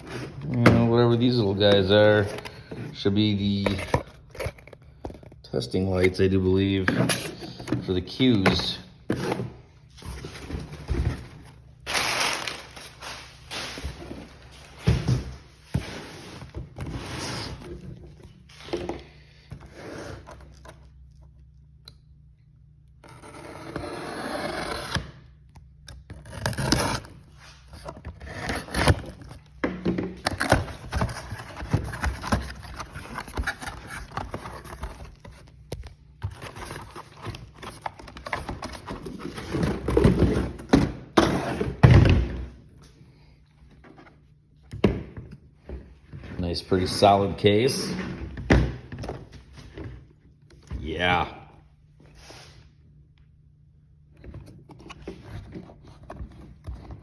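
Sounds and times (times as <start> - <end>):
parts and packaging scraping: 0.0 - 21.2, 26.0 - 41.9, 54.2 - 57.0
packaging rustling: 9.9 - 14.7.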